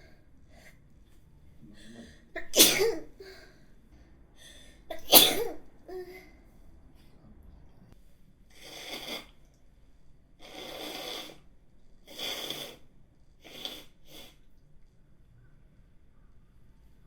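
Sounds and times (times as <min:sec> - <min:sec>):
woman breathing hard: 0:03.1 - 0:04.9.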